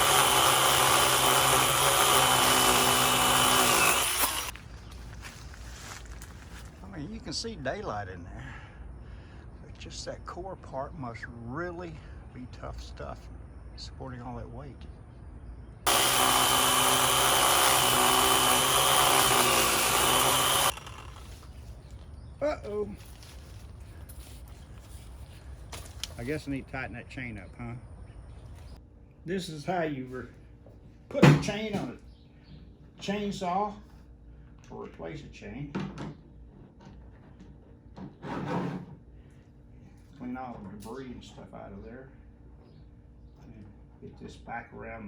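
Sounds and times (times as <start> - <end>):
chainsaw cutting wood: 0.0 - 4.6, 15.9 - 21.5.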